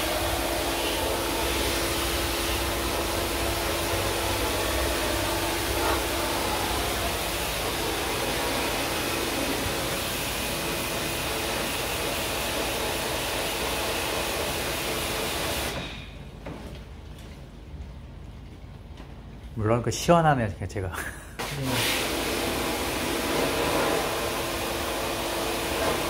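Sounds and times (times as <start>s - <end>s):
pressure washer spraying: 0.0s - 15.8s, 21.4s - 26.0s.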